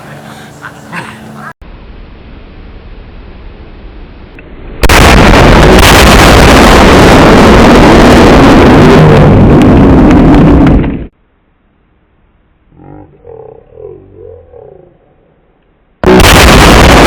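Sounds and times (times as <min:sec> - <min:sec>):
loud rushing noise: 0:04.0 - 0:11.1, 0:16.0 - 0:17.0
loud explosive blast: 0:04.8 - 0:11.1, 0:16.0 - 0:17.0.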